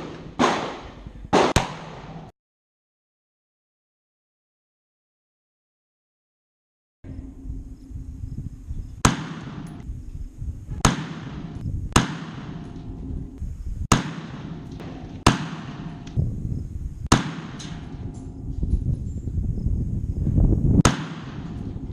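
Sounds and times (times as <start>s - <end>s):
rifle shots: 0.0s - 2.3s, 9.0s - 9.8s, 10.8s - 16.2s, 17.1s - 18.6s, 20.8s - 21.9s.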